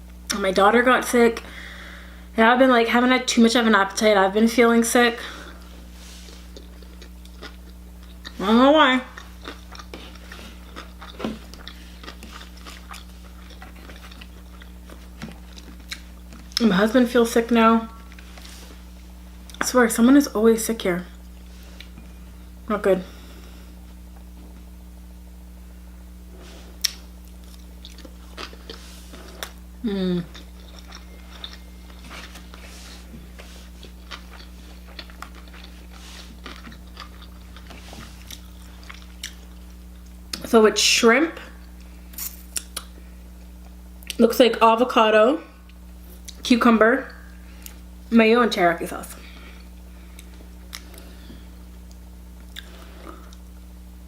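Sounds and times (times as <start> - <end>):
low hum: 0.0 - 54.0
person chewing wet smacks: 6.5 - 8.4, 9.1 - 16.6, 26.8 - 29.6, 30.3 - 40.5, 50.1 - 53.5.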